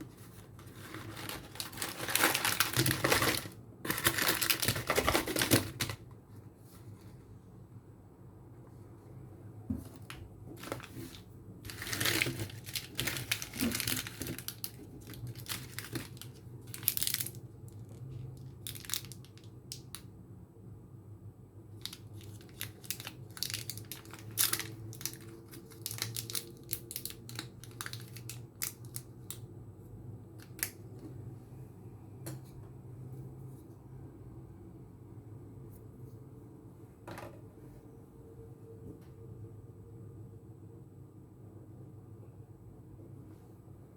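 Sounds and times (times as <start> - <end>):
chocolate packaging crinkling: 0.1 - 6.0, 10.6 - 20.0, 21.7 - 29.5.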